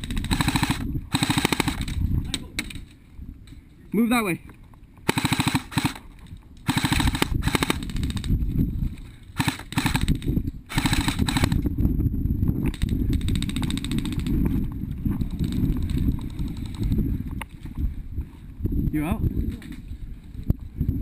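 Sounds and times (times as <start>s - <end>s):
airsoft rifles firing bursts: 0.0s - 2.0s, 5.0s - 6.0s, 6.6s - 8.3s, 9.4s - 11.6s, 12.8s - 14.4s.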